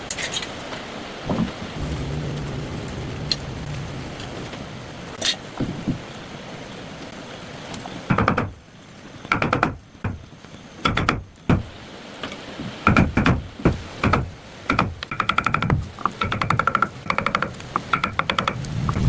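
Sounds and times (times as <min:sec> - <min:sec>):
steady hiss: 0:01.5 - 0:07.7, 0:17.6 - 0:19.0.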